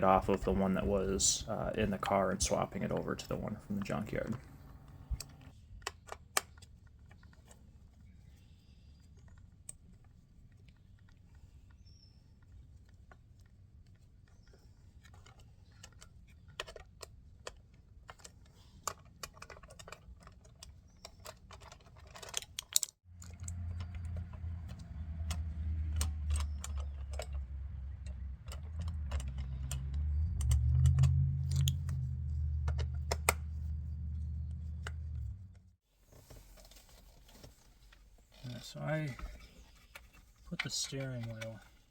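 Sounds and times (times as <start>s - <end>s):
metallic clicks and taps of tools: 15.3s - 32.0s.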